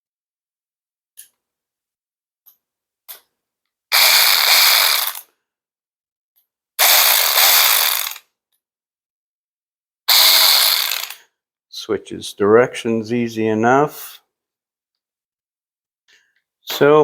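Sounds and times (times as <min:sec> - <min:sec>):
cordless ratchet wrench whirring: 0:03.9 - 0:05.3, 0:06.8 - 0:08.3, 0:10.1 - 0:11.3.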